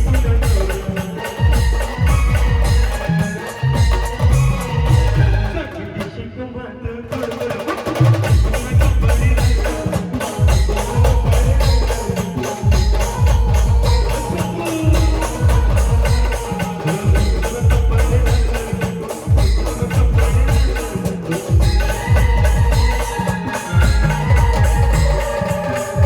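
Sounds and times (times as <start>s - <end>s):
heavy drums: 0.0s - 6.2s, 7.1s - 26.0s
brass band playing: 1.1s - 6.0s.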